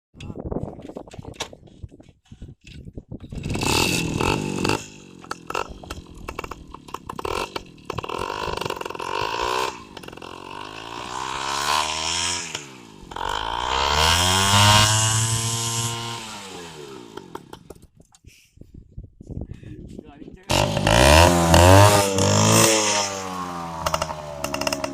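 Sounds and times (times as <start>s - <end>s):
motorcycle engine revving: 3.3s - 17.9s, 20.5s - 24.9s.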